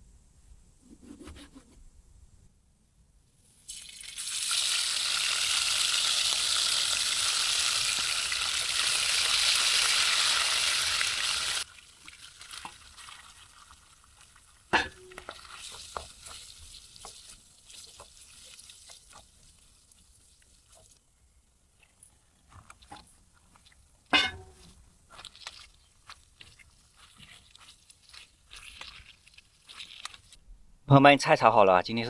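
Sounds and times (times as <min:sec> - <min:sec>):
food sizzling in a pan: 0:03.6 - 0:21.0.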